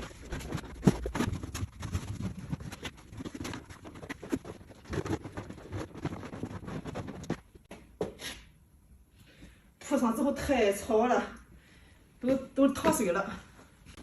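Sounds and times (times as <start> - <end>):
vinyl flooring crinkling and scraping: 0.0 - 8.4.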